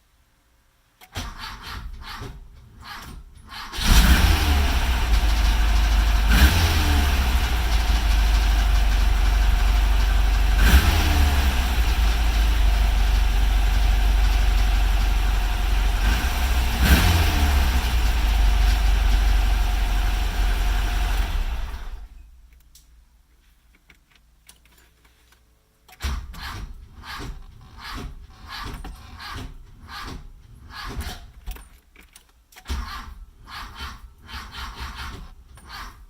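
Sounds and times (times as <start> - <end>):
car engine idling and revving: 3.7 - 22.2.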